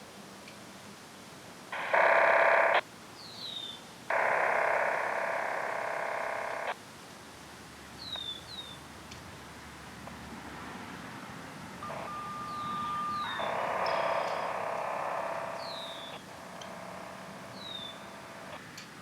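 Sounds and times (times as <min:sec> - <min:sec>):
touch-tone dialing tones: 0:01.8 - 0:02.8, 0:04.1 - 0:06.7, 0:11.8 - 0:18.6.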